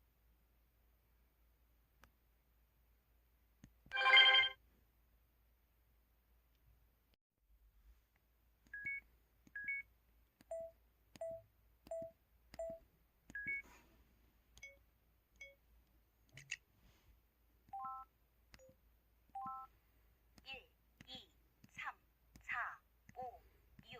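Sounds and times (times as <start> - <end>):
phone keypad beeps: 8.7 - 9.0, 9.6 - 9.8, 10.5 - 13.6, 17.8 - 18.0, 19.4 - 19.7.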